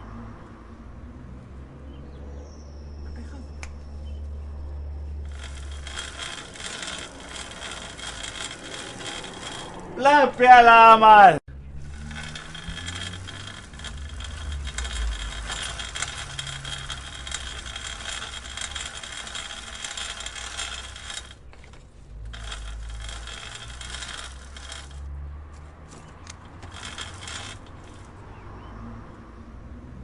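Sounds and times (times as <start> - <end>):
bicycle chain and gears clicking: 5.3 - 10.4, 11.6 - 25.2, 25.8 - 28.3.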